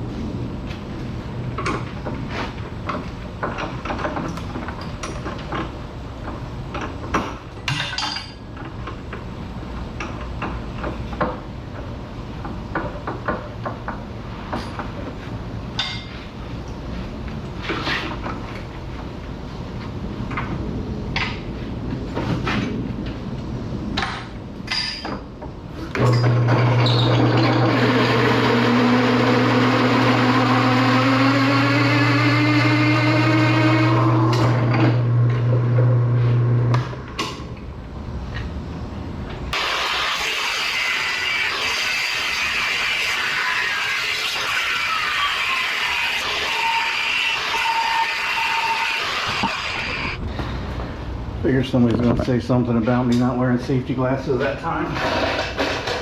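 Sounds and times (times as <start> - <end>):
power tool grinding steel: 26.2 - 35.1, 39.6 - 50.2.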